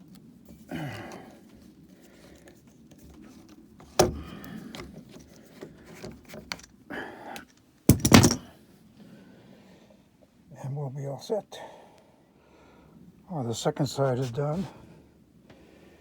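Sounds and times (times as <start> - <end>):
light scraping and rustling: 0.0 - 6.8
wood knocks: 7.9 - 8.4.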